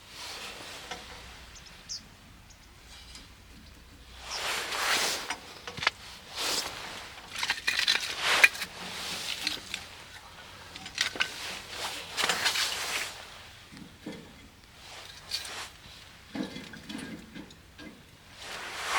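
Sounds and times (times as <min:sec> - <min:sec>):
crunching and rustling: 0:02.8 - 0:17.2, 0:18.3 - 0:18.9.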